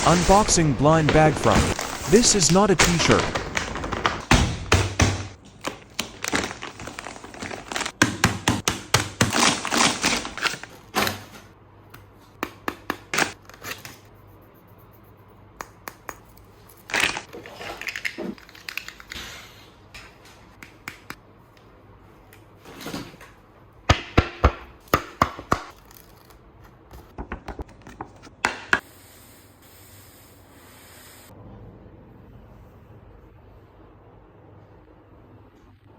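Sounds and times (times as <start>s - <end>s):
packaging crinkling: 5.5s - 8.0s, 9.3s - 10.7s
sharp taps and clicks: 15.6s - 16.4s.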